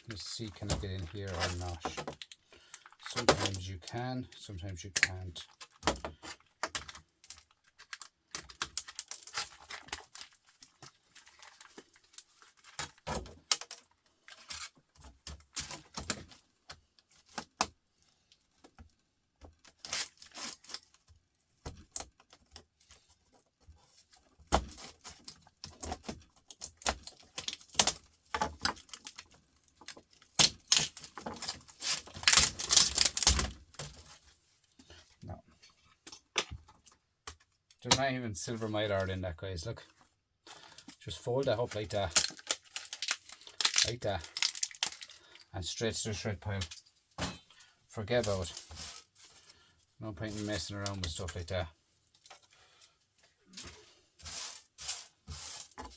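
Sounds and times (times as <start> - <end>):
plastic and metal clicks and snaps: 41.7 - 45.2.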